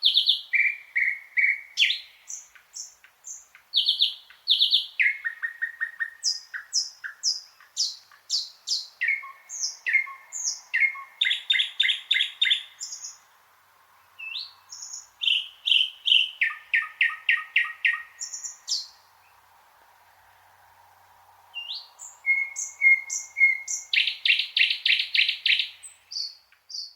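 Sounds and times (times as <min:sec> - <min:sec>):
nightingale singing: 0:00.0 - 0:19.6, 0:21.4 - 0:26.9.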